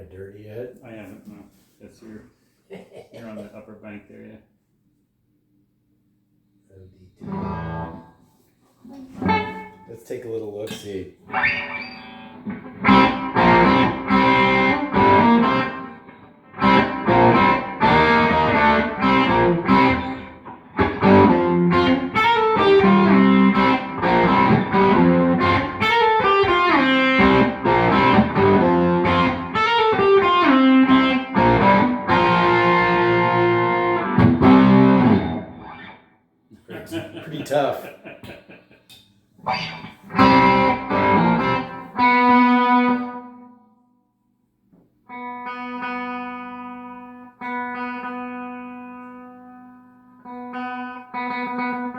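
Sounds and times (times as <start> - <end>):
distorted electric guitar chords: 7.2 - 8.1, 9.2 - 9.9, 11.3 - 35.9, 39.4 - 43.5, 45.1 - 51.9.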